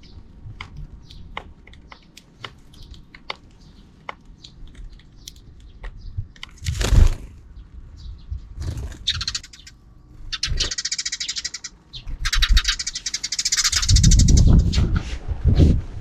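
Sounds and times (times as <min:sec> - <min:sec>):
sparrows chirping: 0:00.0 - 0:14.8.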